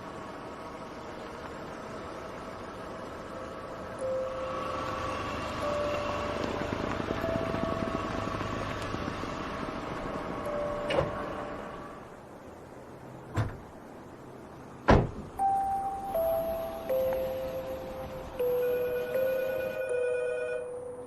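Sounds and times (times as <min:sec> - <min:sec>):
faint held tones: 0:15.4 - 0:21.0.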